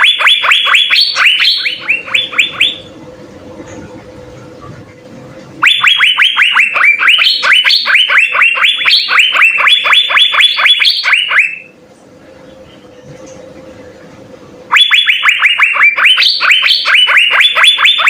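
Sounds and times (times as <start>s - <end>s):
bird whistling song: 0.0s - 2.9s.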